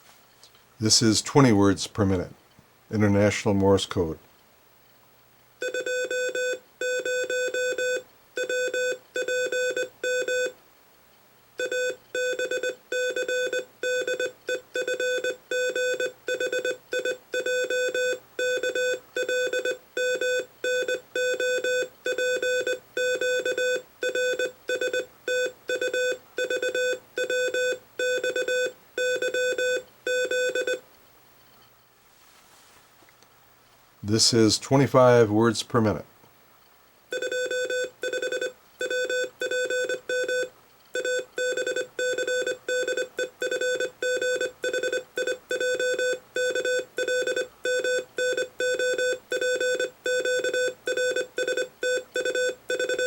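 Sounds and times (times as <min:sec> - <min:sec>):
morse code beeping: 0:11.6 - 0:30.8, 0:37.1 - 0:53.0.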